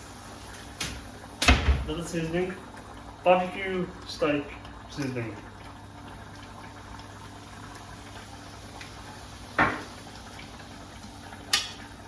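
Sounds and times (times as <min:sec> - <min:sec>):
meat sizzling in a pan: 0:07.4 - 0:12.0.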